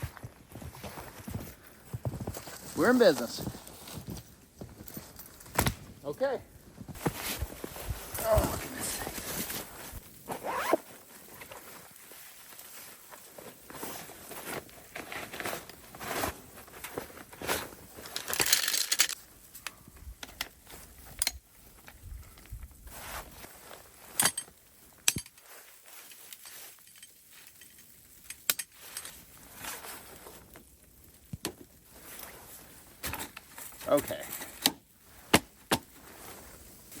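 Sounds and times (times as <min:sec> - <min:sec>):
crunching in snow: 0:00.0 - 0:05.0, 0:28.8 - 0:30.6
branches snapping: 0:05.4 - 0:05.9.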